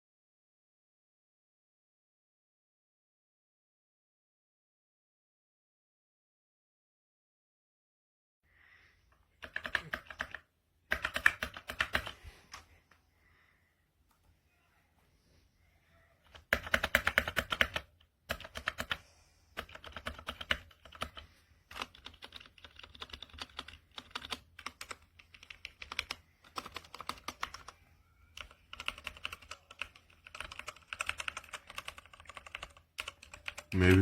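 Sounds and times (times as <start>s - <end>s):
mechanical keyboard typing: 9.4s - 12.2s, 16.2s - 19.0s, 19.6s - 34.0s.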